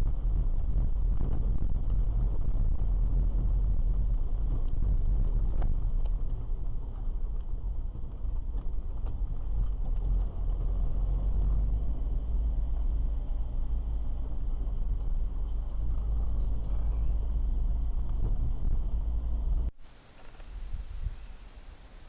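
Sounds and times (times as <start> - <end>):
car engine and tyres rumbling: 0.1 - 22.0
faint ticks: 19.8 - 22.0.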